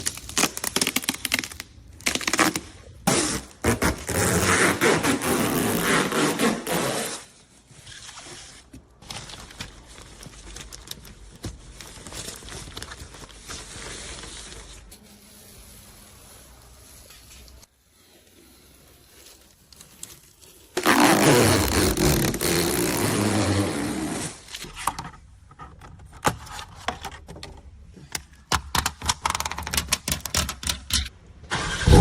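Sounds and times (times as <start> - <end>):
rustling and scraping handling noise: 7.3 - 20.8.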